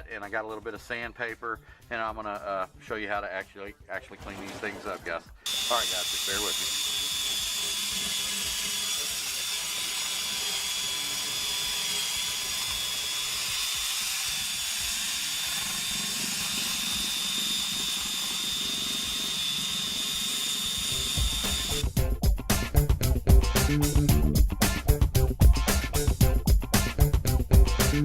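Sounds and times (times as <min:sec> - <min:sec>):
wire brush tool scrubbing metal: 0:04.2 - 0:21.9.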